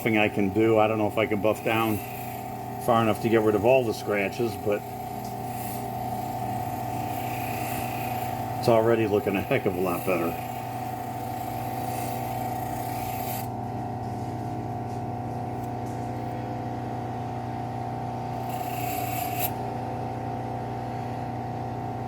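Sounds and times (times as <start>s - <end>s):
bench grinder running: 0.0s - 22.0s
knife blade scraping on wheel: 4.3s - 13.5s, 18.3s - 19.6s.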